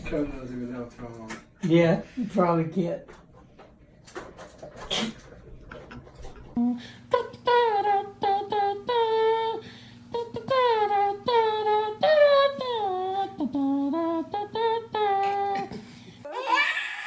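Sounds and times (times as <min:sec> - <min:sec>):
steady low hum: 0:00.0 - 0:16.3
high voice singing: 0:06.5 - 0:15.8.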